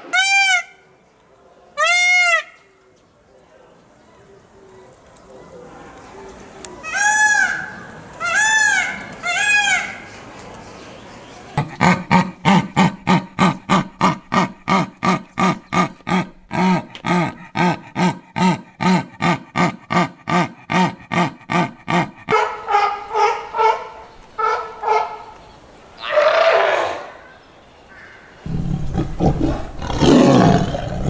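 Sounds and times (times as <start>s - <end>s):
higher-pitched animal calls: 11.6s - 25.2s, 26.0s - 27.3s
animal barking: 11.6s - 25.4s, 28.5s - 31.0s.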